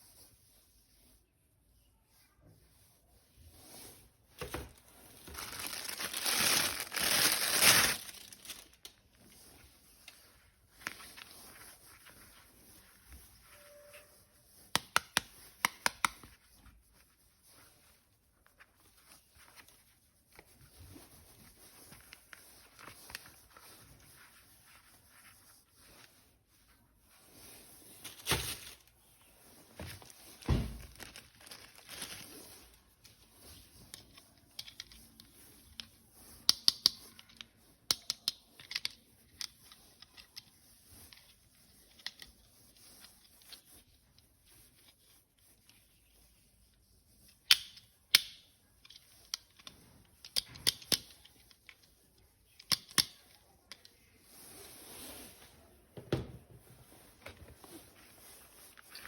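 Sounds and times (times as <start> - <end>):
plastic packaging rustling and tearing: 4.4 - 9.4, 27.9 - 32.9.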